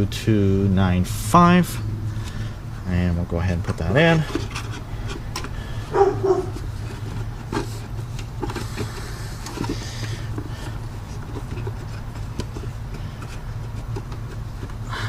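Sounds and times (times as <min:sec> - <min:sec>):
steady low hum: 0:00.0 - 0:15.0
air filter clicking and rustling: 0:03.4 - 0:15.0.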